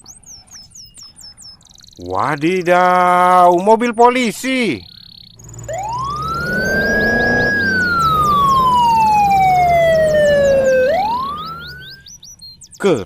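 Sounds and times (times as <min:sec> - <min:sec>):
police siren wailing: 0:05.4 - 0:12.0.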